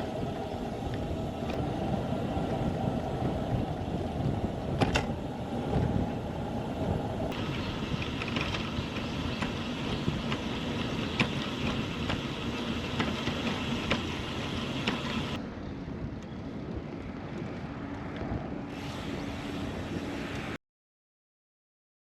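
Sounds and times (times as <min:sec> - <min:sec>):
bicycle rolling noise: 0:00.0 - 0:20.6
wind buffeting microphone: 0:00.0 - 0:20.6
sharp clicks and rattles: 0:07.3 - 0:15.4.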